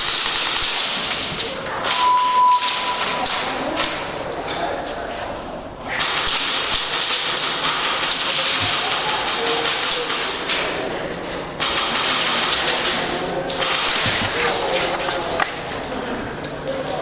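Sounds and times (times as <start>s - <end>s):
airsoft guns firing in bursts: 0.0s - 1.3s, 6.0s - 10.5s, 11.6s - 14.6s.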